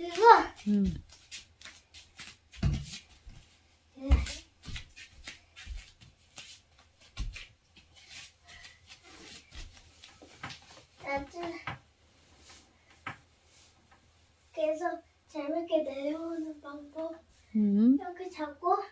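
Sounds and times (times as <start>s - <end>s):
cloth rustling: 0.0s - 14.5s.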